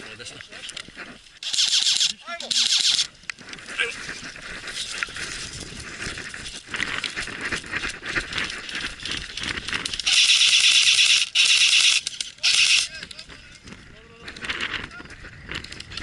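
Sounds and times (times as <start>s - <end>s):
crackling rustle and clicks: 0.0s - 16.0s
airsoft rifle bursts: 1.4s - 3.1s, 10.0s - 12.9s.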